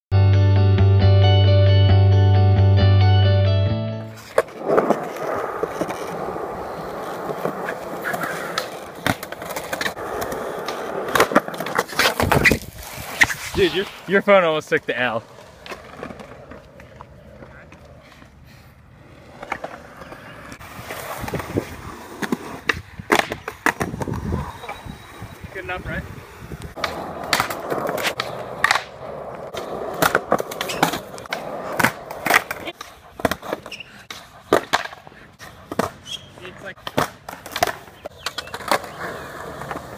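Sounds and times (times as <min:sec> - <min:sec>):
skateboard wheels rumbling: 0:04.0 - 0:39.9
skateboard clacks: 0:04.2 - 0:13.5, 0:19.1 - 0:24.8, 0:26.6 - 0:39.9.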